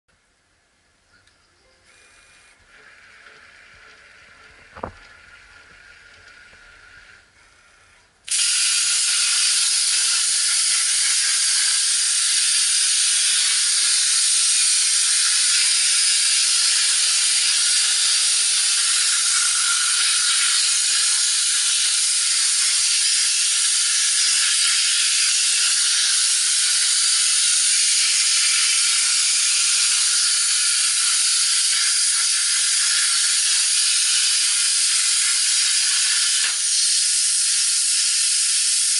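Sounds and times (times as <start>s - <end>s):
plasma cutter hissing: 8.2s - 38.9s.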